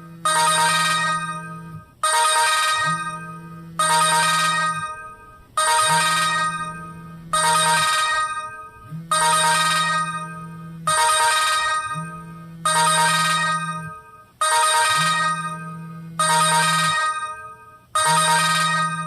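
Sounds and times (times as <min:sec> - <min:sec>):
phone ringtone melody: 0:00.2 - 0:19.0.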